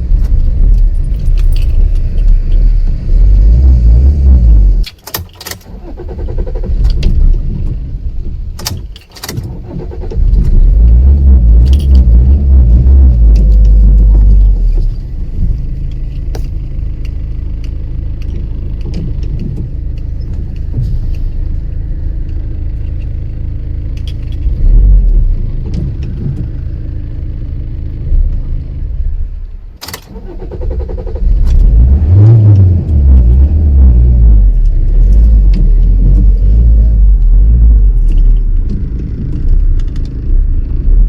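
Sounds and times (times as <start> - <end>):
car engine revving and idling: 0.0 - 41.0
keys jangling: 0.8 - 2.6, 11.6 - 12.0.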